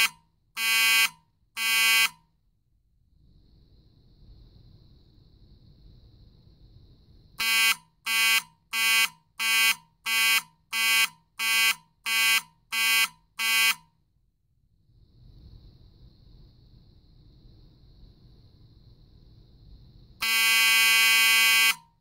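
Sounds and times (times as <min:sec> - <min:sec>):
fire alarm horn buzzing blasts: 0:00.0 - 0:02.3, 0:07.4 - 0:14.0, 0:20.2 - 0:22.0.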